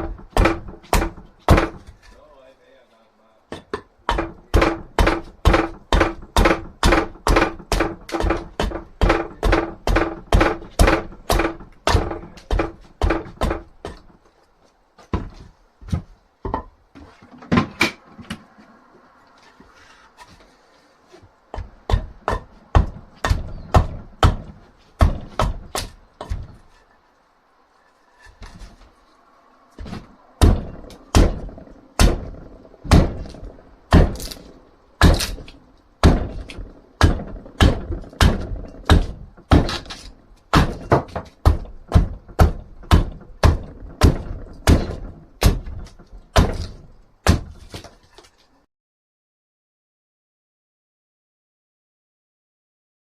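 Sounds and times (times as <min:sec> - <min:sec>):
axe chopping wood: 0:00.0 - 0:02.2, 0:03.5 - 0:14.2, 0:21.5 - 0:26.7, 0:29.8 - 0:48.0.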